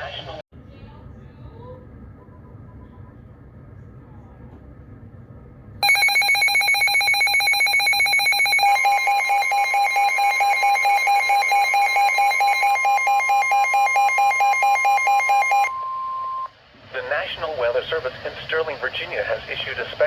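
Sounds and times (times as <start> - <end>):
fast-pulsing buzzer alarm: 5.8 - 15.7
steady warning alarm tone: 5.8 - 16.5.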